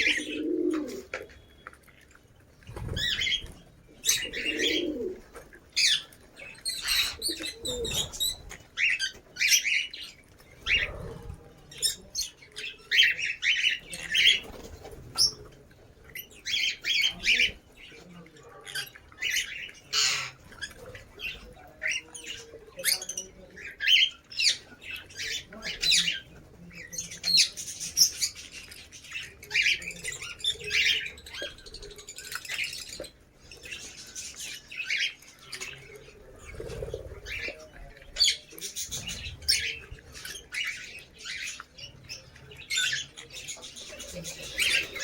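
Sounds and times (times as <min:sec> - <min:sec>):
lovebirds chirping and squawking: 0:00.0 - 0:45.0.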